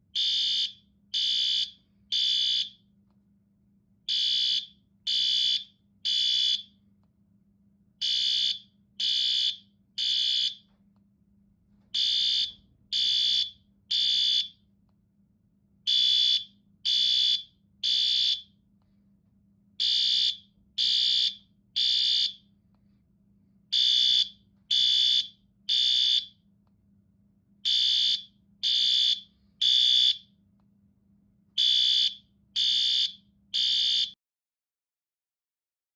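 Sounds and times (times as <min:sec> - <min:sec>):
fire alarm beeps: 0:00.1 - 0:02.9, 0:04.1 - 0:06.8, 0:08.0 - 0:10.7, 0:11.9 - 0:14.7, 0:15.9 - 0:18.5, 0:19.8 - 0:22.5, 0:23.7 - 0:26.4, 0:27.6 - 0:30.3, 0:31.6 - 0:34.2.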